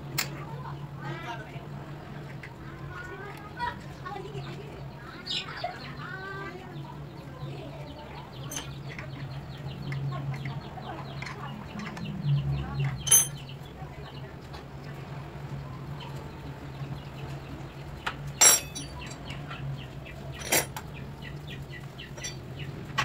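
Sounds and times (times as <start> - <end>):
birds chirping: 2.5 - 15.0, 15.6 - 22.9
sharp metallic clink: 8.5 - 8.8, 13.1 - 13.4, 18.4 - 19.1, 20.4 - 20.7, 22.2 - 22.4.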